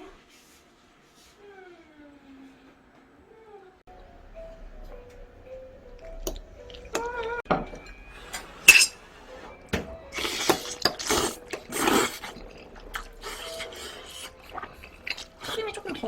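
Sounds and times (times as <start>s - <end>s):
cutlery clinking against dishes: 7.0s - 12.1s.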